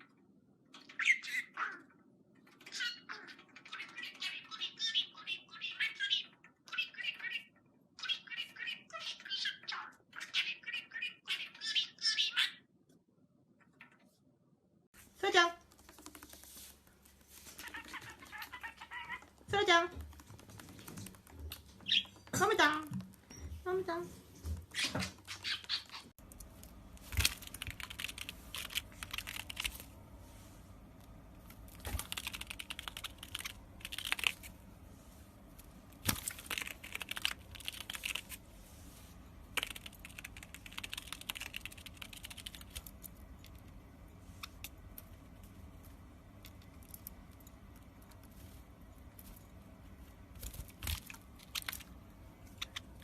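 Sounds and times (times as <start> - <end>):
animal chewing crunchily: 26.2 - 29.9.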